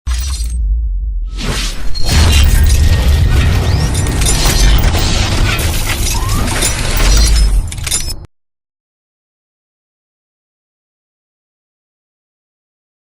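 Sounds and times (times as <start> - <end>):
glass shattering effects: 0.1 - 0.6, 1.4 - 8.3.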